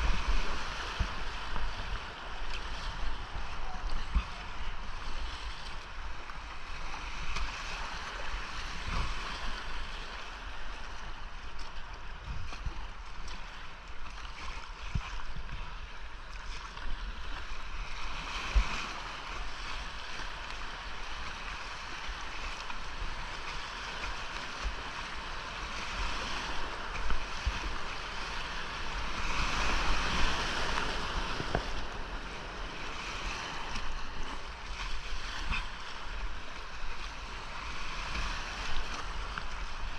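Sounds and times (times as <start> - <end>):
whitewater rapids rushing: 18.8 - 39.9.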